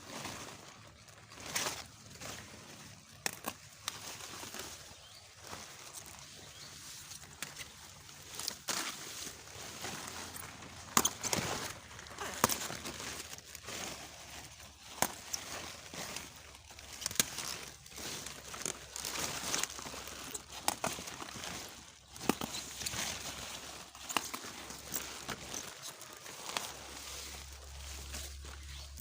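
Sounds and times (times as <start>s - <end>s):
kale leaves rustling: 0.0s - 29.0s
stalks snapping: 3.2s - 3.6s, 16.9s - 17.6s.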